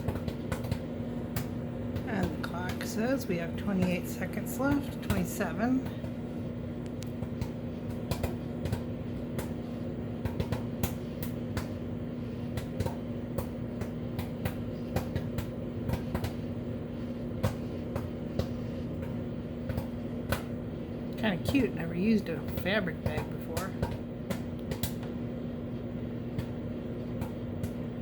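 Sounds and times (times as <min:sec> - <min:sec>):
microwave oven humming: 0:00.0 - 0:28.0
popcorn popping: 0:00.0 - 0:28.0.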